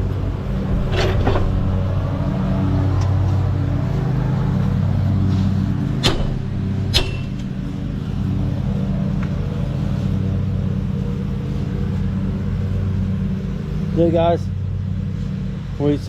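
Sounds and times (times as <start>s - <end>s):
tractor engine idling: 5.8s - 8.8s
hammer striking metal: 6.0s - 8.0s.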